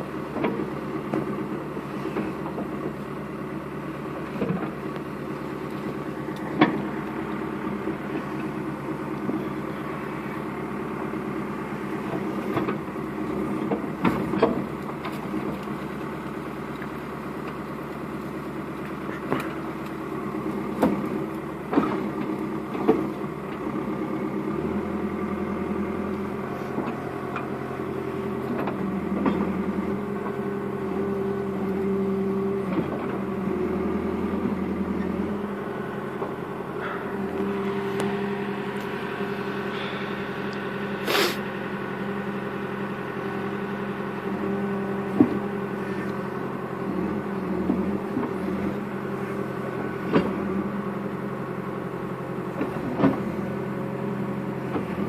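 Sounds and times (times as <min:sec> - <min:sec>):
backhoe engine running: 0:00.0 - 0:55.0.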